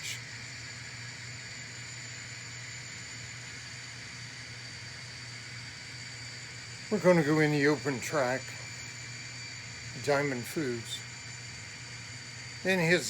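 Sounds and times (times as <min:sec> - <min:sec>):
high-pitched whine: 0:12.4 - 0:13.0.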